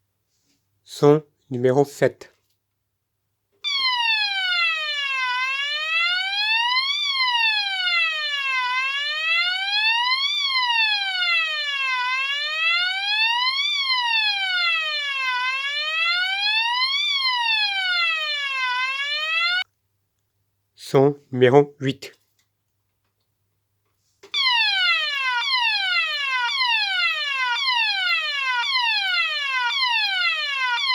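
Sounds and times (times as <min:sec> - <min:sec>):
fire alarm wailing tone: 0:03.6 - 0:19.6, 0:24.4 - 0:30.9.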